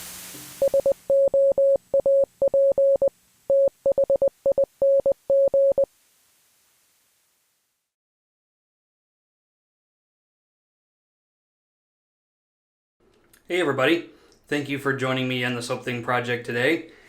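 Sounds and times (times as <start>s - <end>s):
electronic morse code beeps: 0.6s - 5.9s.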